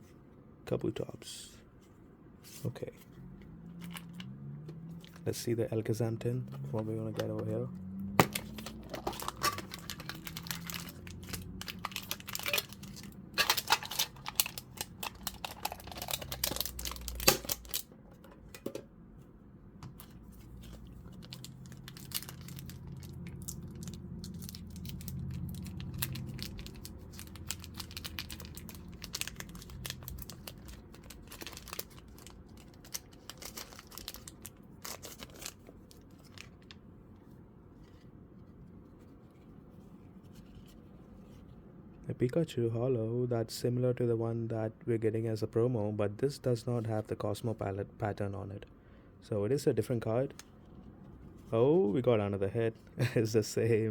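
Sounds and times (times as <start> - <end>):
cards rustling: 6.4 - 17.8, 20.0 - 36.7
foil wrapper crinkling and tearing: 8.2 - 17.9, 20.7 - 36.8.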